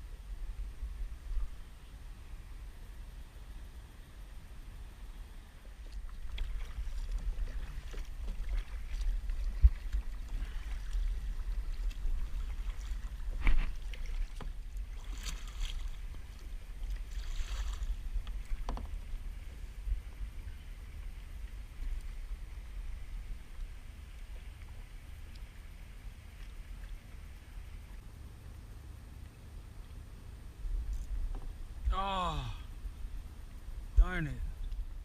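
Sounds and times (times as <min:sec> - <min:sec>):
wind rumble on microphone: 0:00.0 - 0:35.0
paddle splashes: 0:05.4 - 0:29.9.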